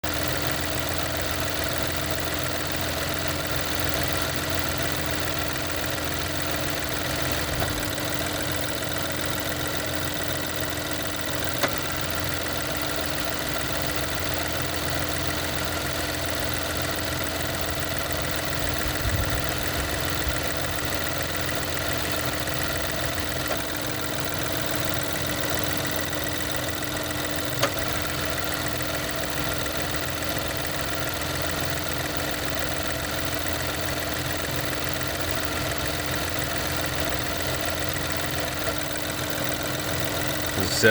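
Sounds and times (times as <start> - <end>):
car engine idling: 0.0 - 40.9
compressor clutch clicks: 11.4 - 12.2, 24.4 - 28.4.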